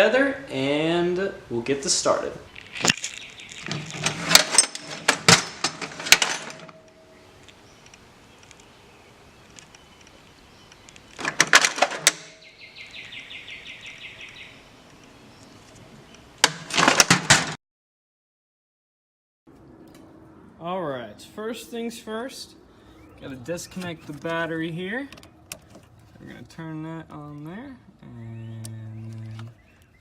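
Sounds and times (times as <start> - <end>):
metal tools clattering: 2.9 - 7.2.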